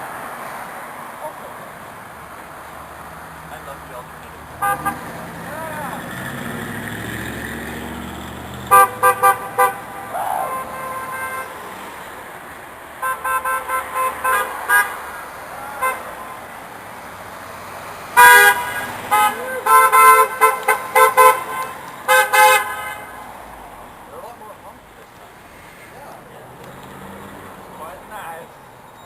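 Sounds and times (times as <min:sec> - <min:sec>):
traffic noise: 0:00.0 - 0:29.0
car horns honking: 0:04.5 - 0:06.4, 0:08.7 - 0:12.1, 0:13.0 - 0:16.5, 0:18.1 - 0:23.3.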